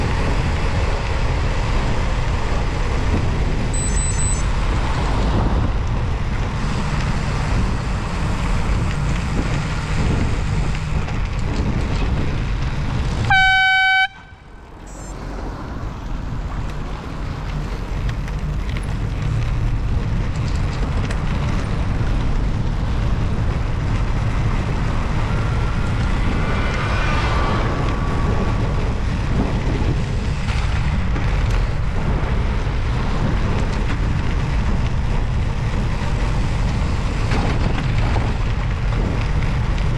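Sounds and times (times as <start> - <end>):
rushing wind and road noise: 0.0 - 39.9
bicycle air horn blast: 13.2 - 15.4.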